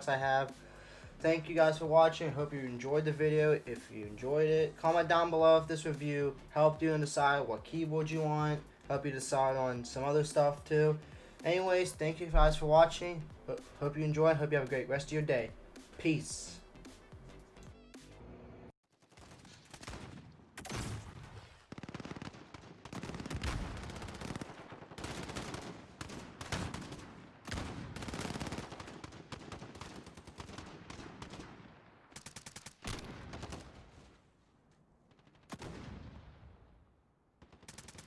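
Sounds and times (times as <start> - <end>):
automatic gunfire: 21.7 - 33.9, 37.4 - 38.0.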